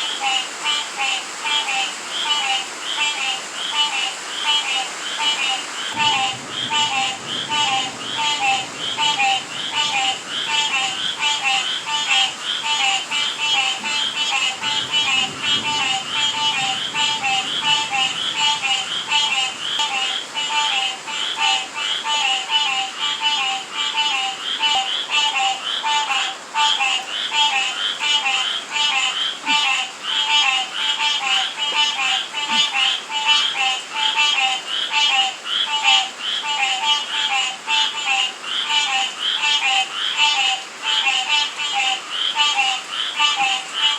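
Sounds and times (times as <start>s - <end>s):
rain hissing: 0.0s - 34.7s
frogs and toads calling: 0.0s - 43.9s.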